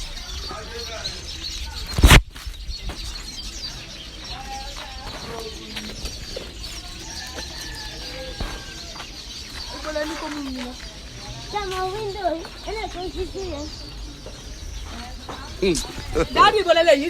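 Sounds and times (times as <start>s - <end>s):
loud sharp thump: 2.0s - 2.3s
chickens clucking: 3.0s - 17.0s.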